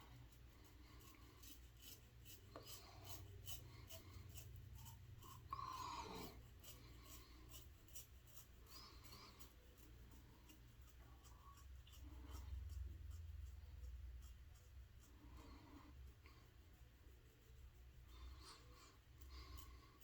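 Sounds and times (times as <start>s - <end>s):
razor scraping stubble: 0.2s - 13.6s.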